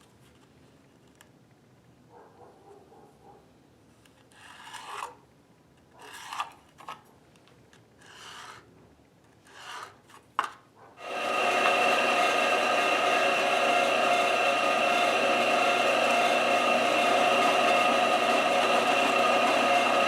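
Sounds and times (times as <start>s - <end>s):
hand tool rubbing on wood: 8.0s - 8.7s
electric power tool running: 11.0s - 20.0s.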